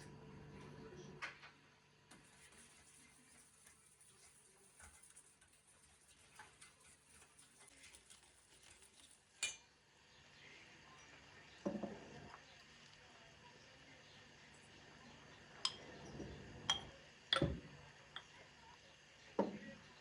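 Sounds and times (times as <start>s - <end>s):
faint taps of dishes: 11.6s - 12.0s, 19.4s - 19.7s.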